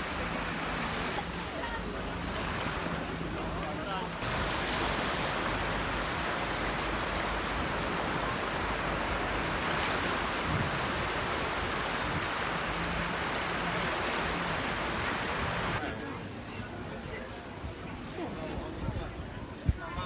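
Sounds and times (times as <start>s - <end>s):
small waves breaking on sand: 0.0s - 15.8s.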